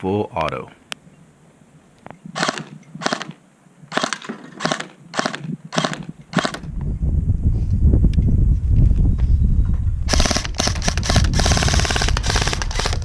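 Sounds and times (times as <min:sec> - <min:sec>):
airsoft gun firing bursts: 0:02.4 - 0:06.6, 0:10.1 - 0:13.0
low rumble: 0:06.6 - 0:13.0.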